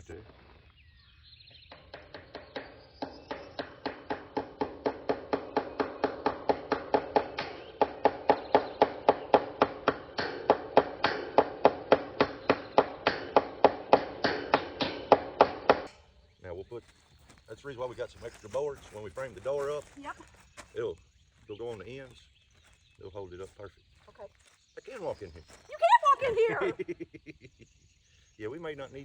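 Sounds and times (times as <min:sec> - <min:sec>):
hammer blows on staples: 0:01.7 - 0:16.0.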